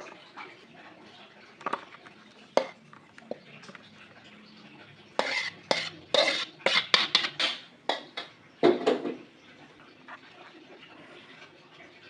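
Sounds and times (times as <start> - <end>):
dishes and cutlery clattering: 1.6 - 3.9, 5.2 - 9.3.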